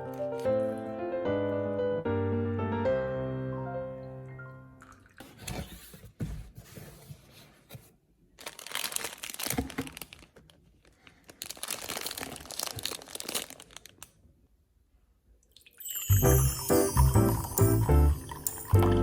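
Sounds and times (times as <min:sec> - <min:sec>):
plastic wrapping crinkling and tearing: 0:08.4 - 0:14.3.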